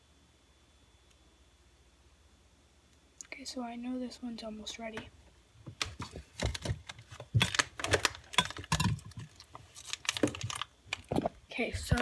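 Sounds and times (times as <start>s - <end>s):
hard objects clicking and knocking: 5.8s - 11.3s.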